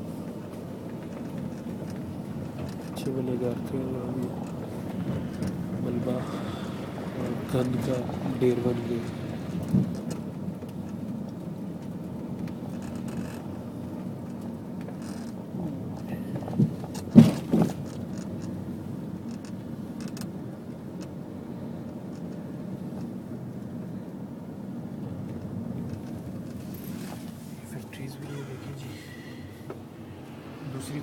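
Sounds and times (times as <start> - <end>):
vehicle driving hum: 0.0 - 31.0.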